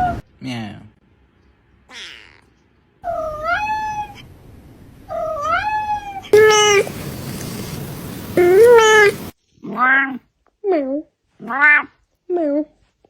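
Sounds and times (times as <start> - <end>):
cat meowing: 1.9 - 4.2, 5.1 - 10.2.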